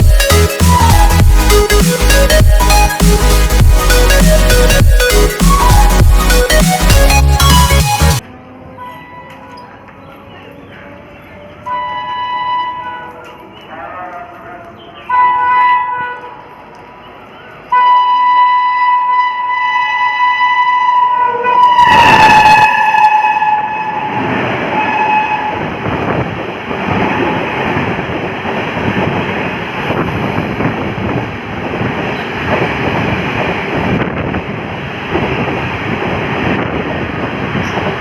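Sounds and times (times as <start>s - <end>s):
train rumble and wheel clatter: 8.2s - 38.0s
locomotive horn blast: 11.6s - 13.4s, 15.1s - 16.6s, 17.7s - 25.8s.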